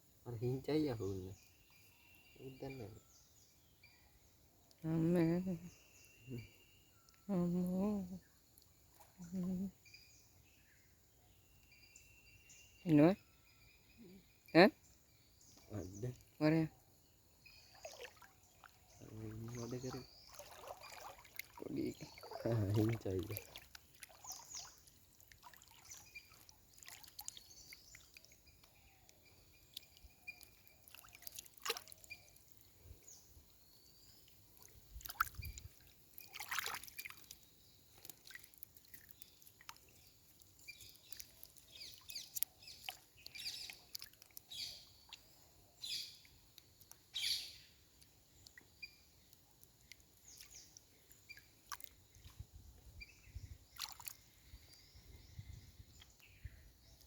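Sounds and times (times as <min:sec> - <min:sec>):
water splashing and dripping: 0:17.7 - 0:32.8, 0:34.2 - 0:45.3, 0:48.0 - 0:52.4, 0:53.7 - 0:54.2.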